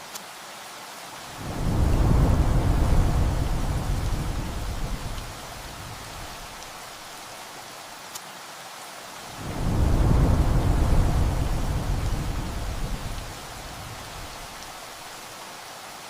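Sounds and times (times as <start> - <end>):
steady rain: 0.0 - 16.0
rolling thunder: 1.3 - 7.1, 9.4 - 15.2.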